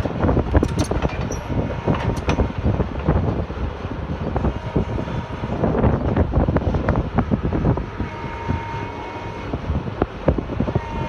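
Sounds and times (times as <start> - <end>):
excavator engine and hydraulics: 0.0 - 11.0
metallic clanks and knocks: 0.5 - 2.7.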